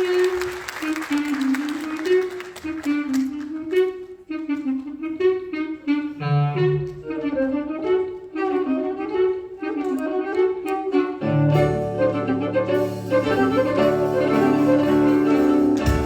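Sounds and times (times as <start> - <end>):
melodic instrument playing: 11.3 - 16.0.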